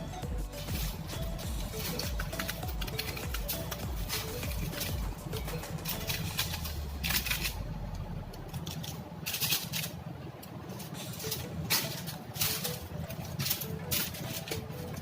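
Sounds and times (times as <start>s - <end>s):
kitchen scraping and rustling: 0.0s - 7.6s, 8.5s - 15.0s
steady low hum: 0.0s - 15.0s.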